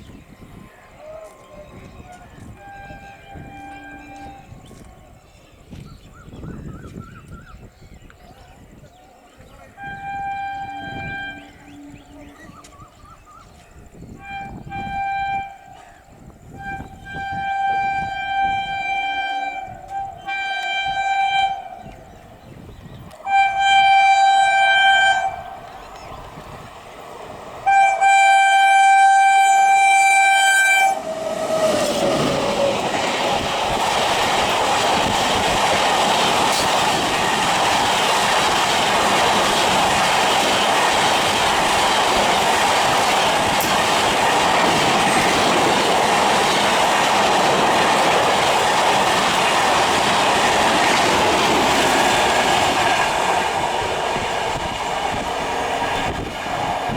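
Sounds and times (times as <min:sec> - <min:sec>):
train horn blasts: 0:01.0 - 0:04.9, 0:09.7 - 0:12.9, 0:14.0 - 0:22.6, 0:23.2 - 0:26.2, 0:27.6 - 0:33.4
train wheels clattering on rails: 0:31.0 - 0:56.9.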